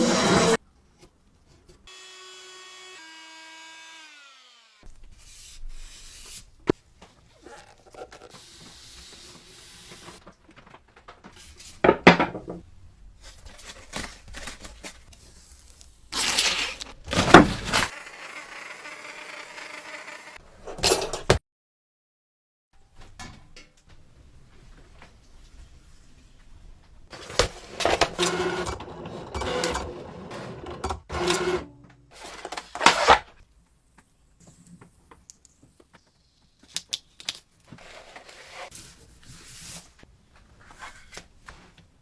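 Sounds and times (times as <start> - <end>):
hand tool rubbing and scraping: 0.0 - 0.6, 27.1 - 31.6.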